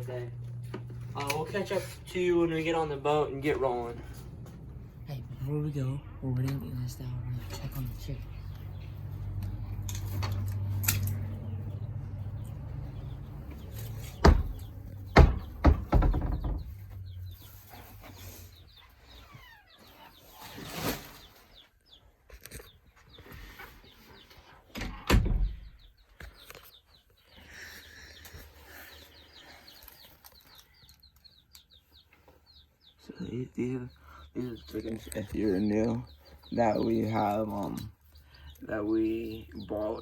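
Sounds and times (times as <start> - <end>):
low rumble: 2.3 - 13.5
chicks peeping: 10.6 - 40.0
loud knocks: 14.2 - 16.8.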